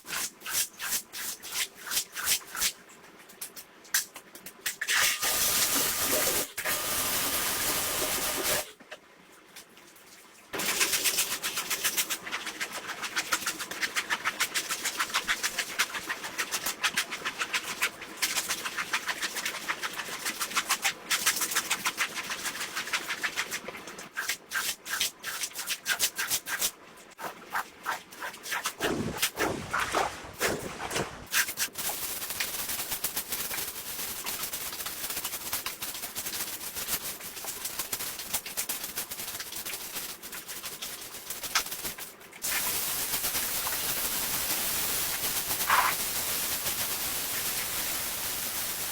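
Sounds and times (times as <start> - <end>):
steady hiss: 41.1 - 48.9.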